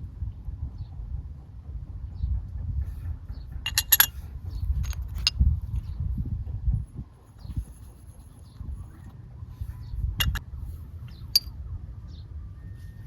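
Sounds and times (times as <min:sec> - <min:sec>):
steady low rumble: 0:00.0 - 0:12.7
sharp clinks: 0:03.7 - 0:04.1, 0:10.2 - 0:10.4.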